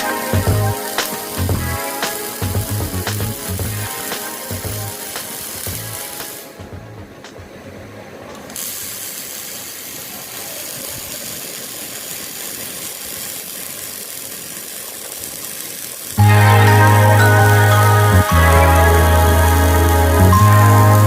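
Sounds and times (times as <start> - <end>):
music: 0.0 - 7.5, 16.2 - 21.0
robotic welding machine hissing: 0.1 - 6.5, 8.5 - 16.2.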